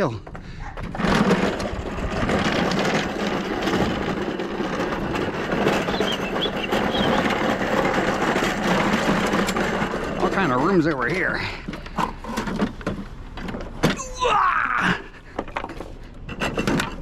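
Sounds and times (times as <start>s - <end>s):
road noise: 1.5s - 17.0s
vehicle engine hum: 1.8s - 14.3s.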